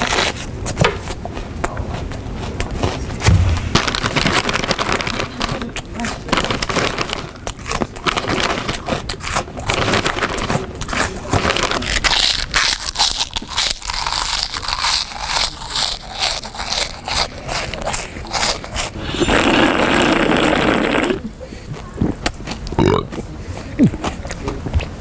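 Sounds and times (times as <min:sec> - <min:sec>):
food wrapping crinkling: 0:01.3 - 0:19.0
person crunching food: 0:01.9 - 0:19.8, 0:22.0 - 0:23.2.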